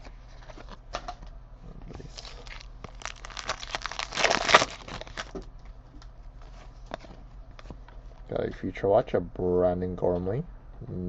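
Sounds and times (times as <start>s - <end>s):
wrapper crinkling and tearing: 1.9s - 5.4s.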